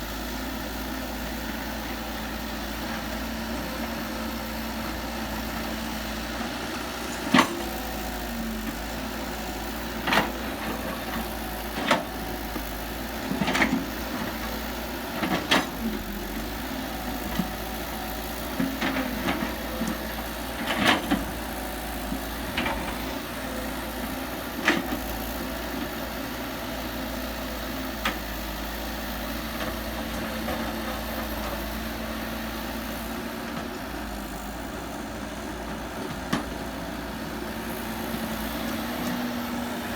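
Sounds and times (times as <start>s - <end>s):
heavy machinery engine running: 0.0s - 39.9s.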